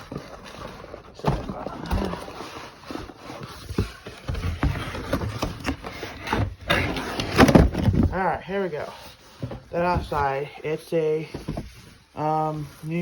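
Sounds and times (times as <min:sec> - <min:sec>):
cardboard and plastic rustling: 0:00.0 - 0:13.0
knocks and bumps: 0:09.4 - 0:10.4.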